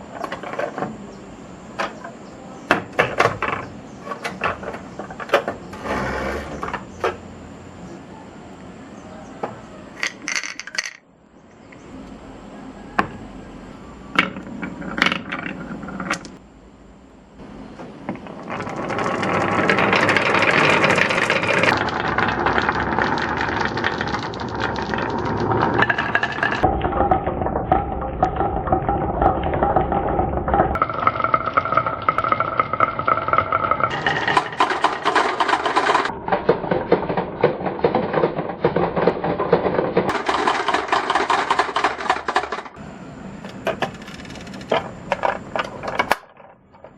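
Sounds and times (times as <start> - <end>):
marbles rattling down wooden run: 10.0 - 11.0, 14.2 - 16.4, 18.2 - 42.8, 43.5 - 46.6.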